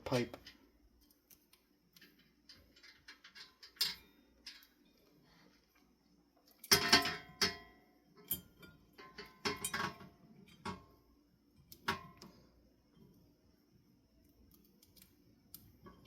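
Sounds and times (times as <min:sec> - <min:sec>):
metal parts clanking together: 0:02.5 - 0:04.8, 0:06.6 - 0:10.8.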